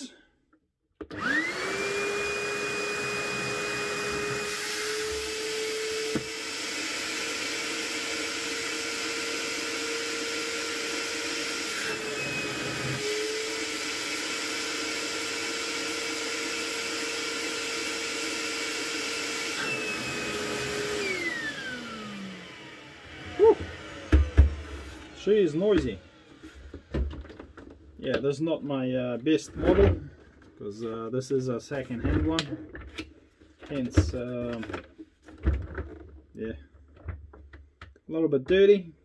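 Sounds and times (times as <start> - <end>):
vacuum cleaner motor whine: 1.1 - 27.2.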